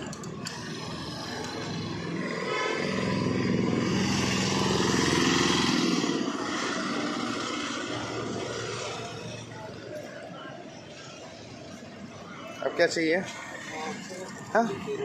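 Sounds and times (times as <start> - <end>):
passing vehicle engine: 0.0 - 11.7.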